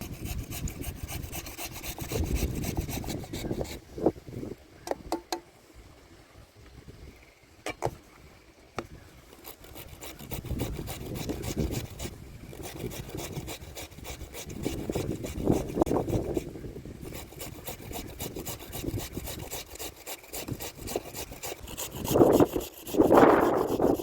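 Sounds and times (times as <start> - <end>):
potatoes grated on a grater: 0.0 - 3.7, 9.4 - 16.5, 17.1 - 24.0.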